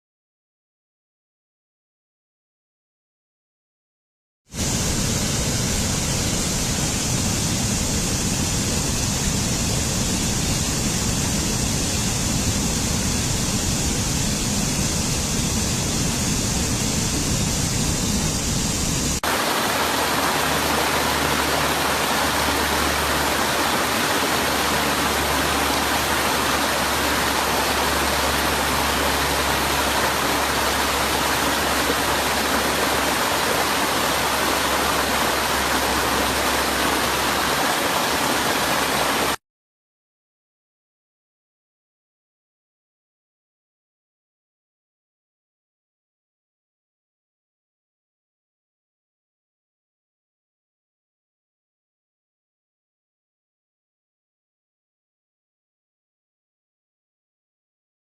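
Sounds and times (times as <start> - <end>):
waterfall roaring: 4.6 - 39.4
low hum: 4.8 - 39.3.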